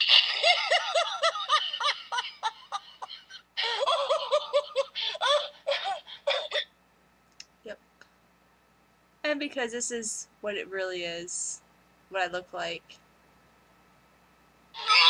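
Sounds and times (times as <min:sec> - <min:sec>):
person giggling high-pitched: 0:00.0 - 0:06.6.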